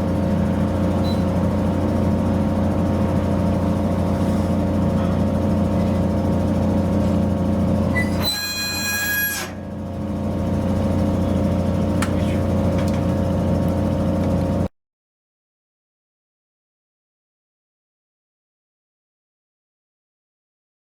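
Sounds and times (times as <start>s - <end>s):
diesel car engine idling: 0.0s - 8.1s, 9.6s - 14.7s.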